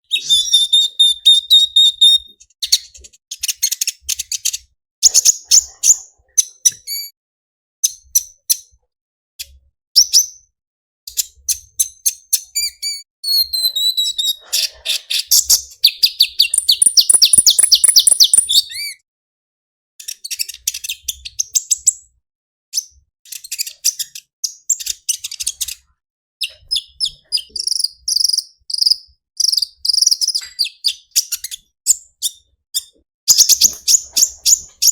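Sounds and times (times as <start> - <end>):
bird chirping and trilling: 0.0 - 2.3, 3.3 - 7.1, 12.3 - 19.0, 26.4 - 34.9.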